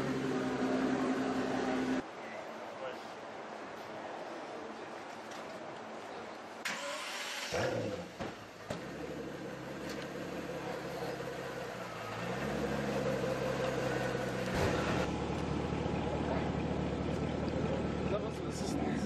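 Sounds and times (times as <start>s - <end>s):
car engine idling: 8.8s - 19.0s.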